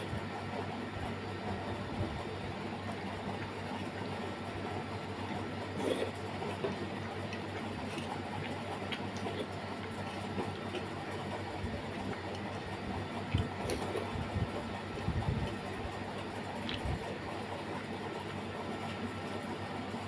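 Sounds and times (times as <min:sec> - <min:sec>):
steady background hum: 0:00.0 - 0:20.0
faint chewing: 0:05.2 - 0:14.4, 0:15.4 - 0:17.2.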